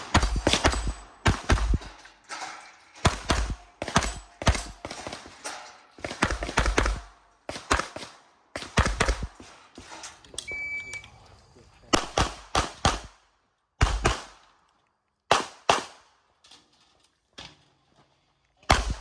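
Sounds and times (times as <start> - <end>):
pistol shots: 0.0 - 1.9, 3.0 - 9.5, 11.9 - 13.2, 13.8 - 14.5, 15.3 - 16.2, 18.7 - 19.0.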